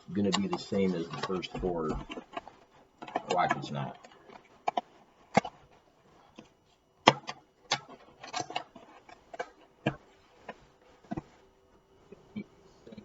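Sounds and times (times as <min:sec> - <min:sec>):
sharp knocks and clicks: 0:00.2 - 0:05.6, 0:06.3 - 0:11.3.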